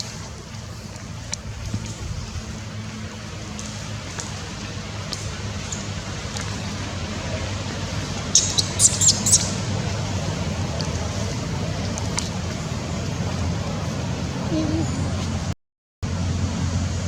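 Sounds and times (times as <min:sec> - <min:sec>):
road traffic hum: 0:00.0 - 0:17.0
baby monkey squeaking: 0:08.3 - 0:09.6.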